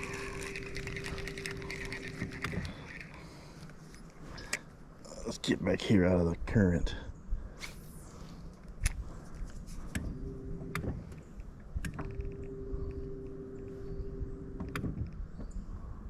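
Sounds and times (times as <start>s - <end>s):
electric motor whining: 0.0s - 3.2s.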